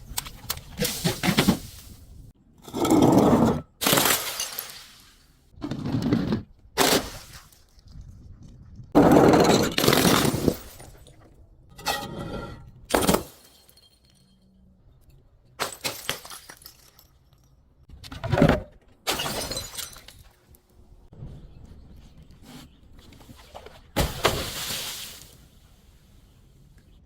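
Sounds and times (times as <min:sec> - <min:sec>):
glass bottles shattering: 0:03.8 - 0:05.1, 0:09.2 - 0:11.1, 0:12.9 - 0:14.6, 0:15.6 - 0:17.6, 0:19.1 - 0:20.4.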